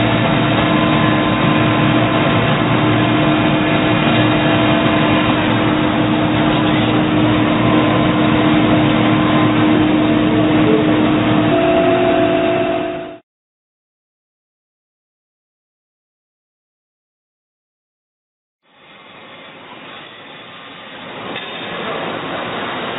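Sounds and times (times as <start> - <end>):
lathe running: 0.0 - 13.2.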